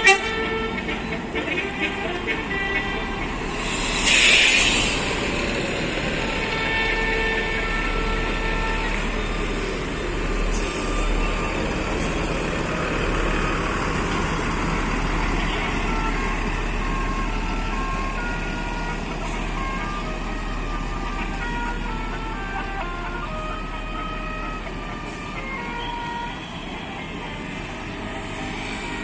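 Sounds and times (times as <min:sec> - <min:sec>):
bus engine: 0:00.0 - 0:29.0
bus horn playing a tune: 0:00.0 - 0:29.0
traffic noise: 0:00.0 - 0:29.0.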